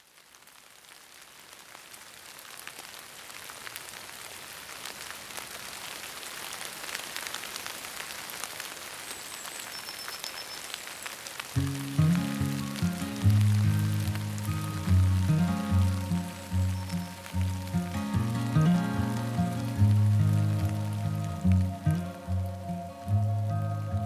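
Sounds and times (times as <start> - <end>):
steady rain falling: 0.0 - 24.0
faint high chirps: 9.2 - 11.2, 15.3 - 18.8.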